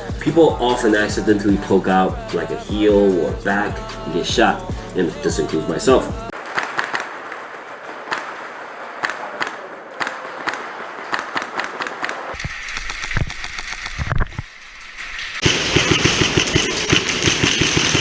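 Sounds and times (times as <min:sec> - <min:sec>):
airsoft guns firing: 0:06.3 - 0:13.9, 0:15.4 - 0:18.0.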